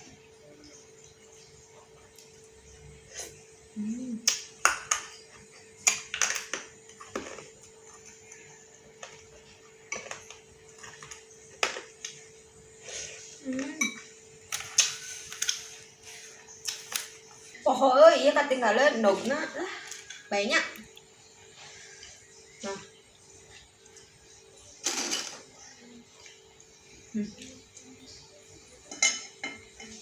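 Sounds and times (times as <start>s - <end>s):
spoon clinking against dish: 13.8s - 14.1s, 28.8s - 30.0s.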